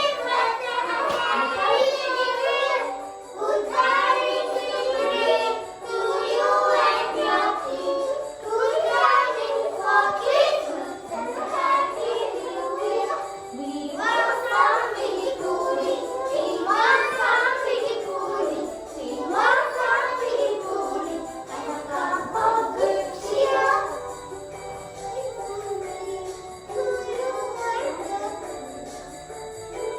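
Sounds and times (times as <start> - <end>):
young children singing: 0.0 - 29.9.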